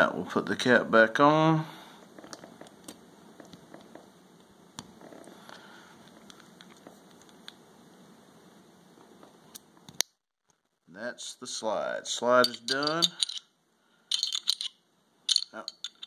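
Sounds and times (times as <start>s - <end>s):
pistol parts clicking and scraping: 12.4s - 13.5s, 14.1s - 16.0s.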